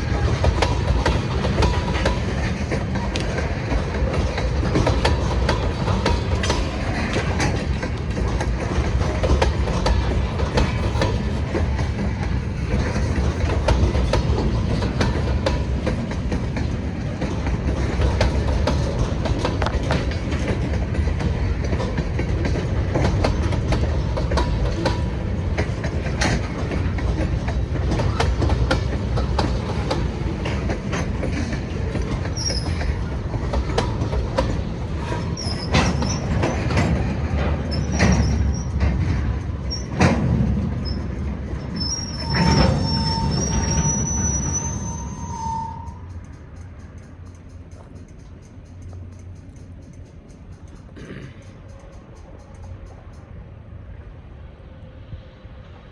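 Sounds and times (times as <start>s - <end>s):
wheels clanking over rail joints: 0.0s - 53.9s
freight train rumbling on rails: 0.0s - 55.9s
high-pitched wheel squeals: 41.8s - 46.2s.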